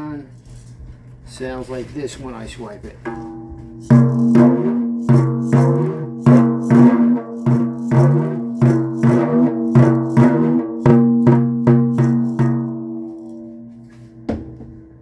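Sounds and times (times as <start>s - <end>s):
frame drum beaten in rhythm: 3.0s - 13.3s.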